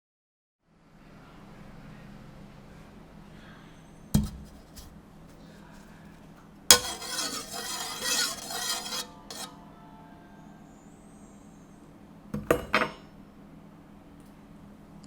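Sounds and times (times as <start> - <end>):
kitchenware knocking: 4.2 - 4.9, 12.4 - 13.0
metal and dishes clattering: 6.7 - 9.5.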